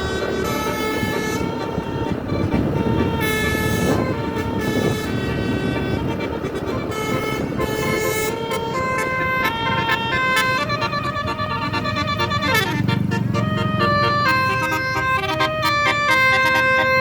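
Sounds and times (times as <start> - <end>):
bus engine rumble: 0.0 - 17.0
bus horn tune: 0.0 - 17.0
road noise: 0.0 - 17.0.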